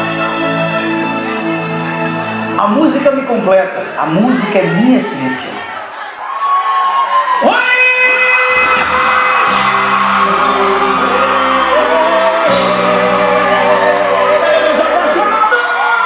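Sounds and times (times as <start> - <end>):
bass line: 8.0 - 15.5
keyboard chords: 8.0 - 16.0
wavering held melody: 8.2 - 15.7.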